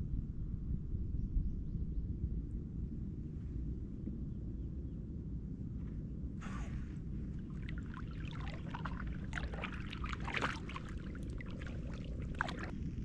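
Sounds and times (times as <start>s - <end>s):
steady low rumble: 0.0s - 13.0s
water splashing and trickling: 7.2s - 13.0s.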